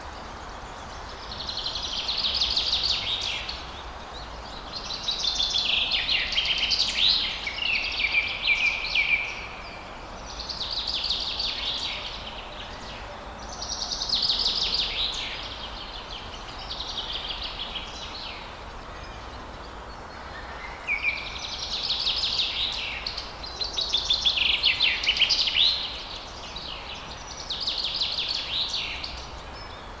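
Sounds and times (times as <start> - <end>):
steady background hiss: 0.0 - 30.0.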